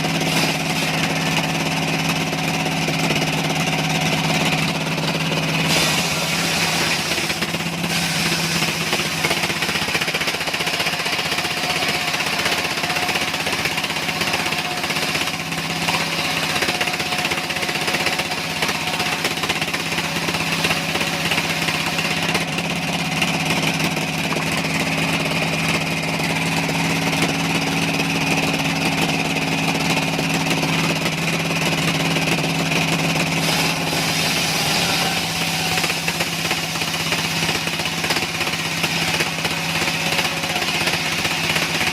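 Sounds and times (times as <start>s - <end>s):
sawmill engine hum: 0.0s - 41.9s.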